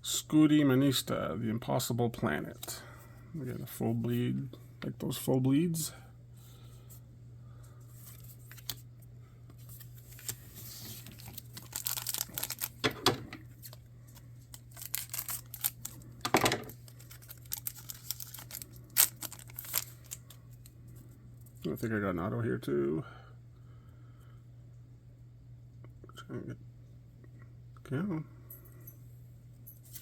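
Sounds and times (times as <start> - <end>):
trading cards rustling and clicking: 7.9 - 8.8, 9.5 - 20.7.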